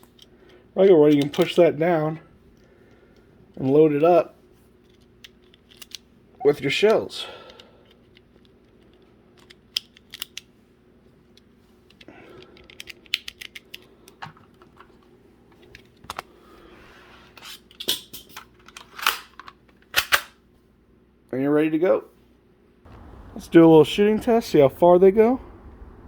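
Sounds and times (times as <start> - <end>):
plastic clicks loading toy blaster: 1.1 - 1.6, 4.9 - 6.0, 7.5 - 10.5, 11.9 - 13.9, 17.7 - 20.4.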